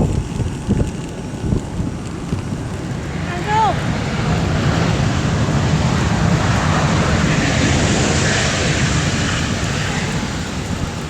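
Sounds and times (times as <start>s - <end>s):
airplane engines rumbling: 0.0s - 11.0s
rush of air: 2.8s - 11.0s.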